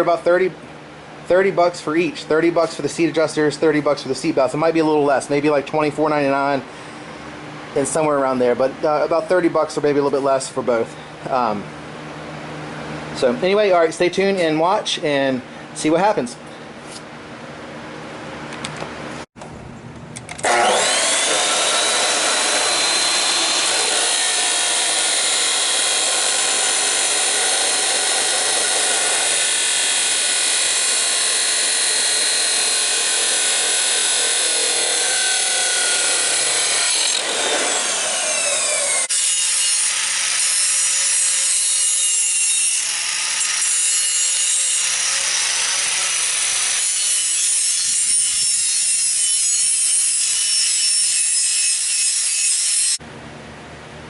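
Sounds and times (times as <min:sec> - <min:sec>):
angle grinder grinding metal: 0:20.4 - 0:53.0.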